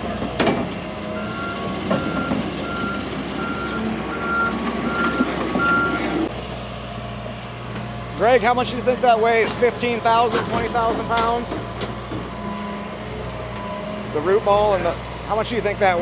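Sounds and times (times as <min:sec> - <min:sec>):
engine running: 0:00.0 - 0:16.0
backup alarm beeping: 0:01.2 - 0:06.0.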